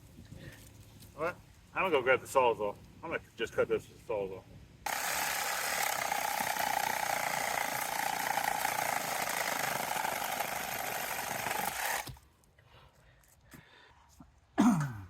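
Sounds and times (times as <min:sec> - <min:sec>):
reciprocating saw cutting: 0:04.9 - 0:12.2.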